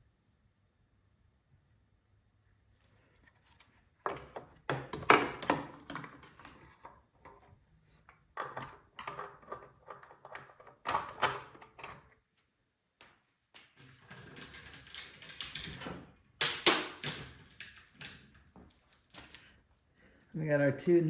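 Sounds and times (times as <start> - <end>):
clatter of hand tools and parts: 3.3 - 12.2, 13.6 - 19.6.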